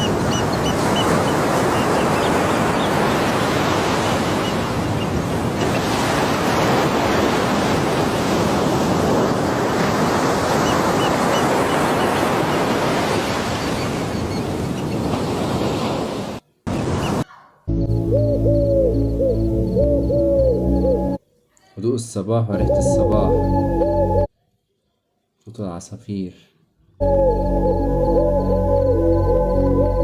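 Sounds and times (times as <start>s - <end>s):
ocean surf rushing: 0.0s - 17.2s.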